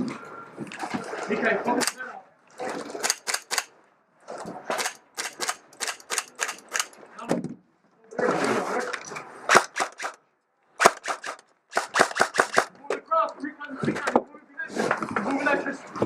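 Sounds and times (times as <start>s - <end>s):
airsoft guns firing: 3.0s - 3.7s, 4.7s - 7.0s, 9.5s - 10.2s, 10.8s - 12.8s.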